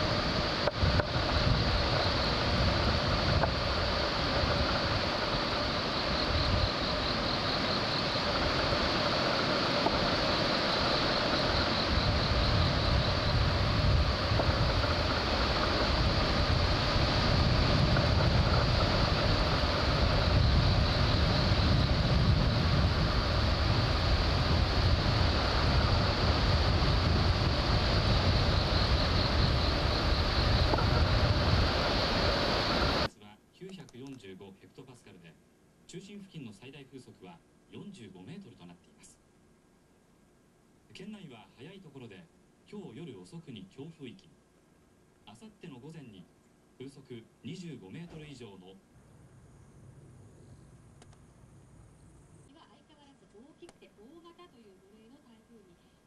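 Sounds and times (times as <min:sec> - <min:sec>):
rough sea surf: 0:00.0 - 0:33.1
wind rumbling on microphone: 0:00.0 - 0:33.1.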